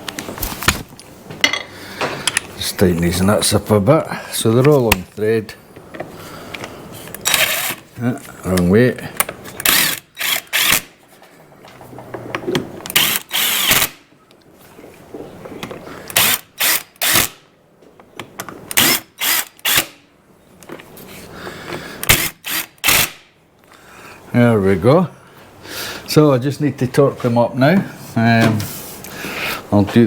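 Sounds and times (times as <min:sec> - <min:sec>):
power tool short bursts: 0:07.3 - 0:07.8, 0:12.9 - 0:14.0, 0:16.2 - 0:17.4, 0:18.8 - 0:20.0, 0:22.1 - 0:23.2.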